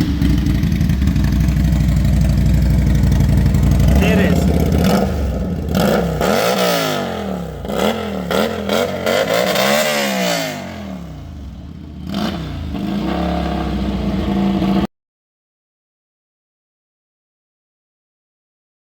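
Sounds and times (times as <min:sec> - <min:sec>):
motorcycle engine revving and idling: 0:00.0 - 0:14.9.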